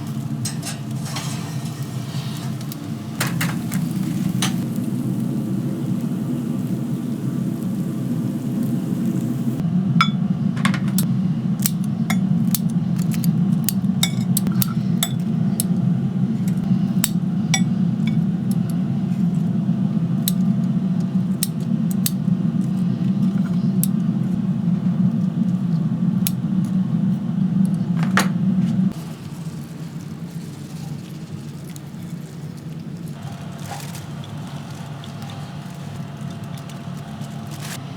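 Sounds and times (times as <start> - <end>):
low hum: 2.4 - 29.0.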